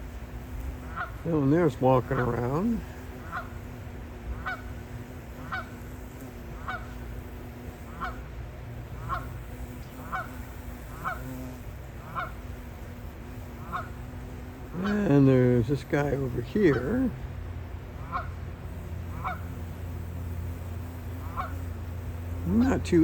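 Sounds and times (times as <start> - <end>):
geese honking: 0.9 - 3.6, 4.3 - 4.8, 5.4 - 5.8, 6.5 - 7.1, 7.8 - 8.3, 8.9 - 9.4, 10.0 - 11.3, 12.0 - 12.4, 13.6 - 14.0, 14.7 - 17.2, 18.0 - 19.7, 21.2 - 21.8.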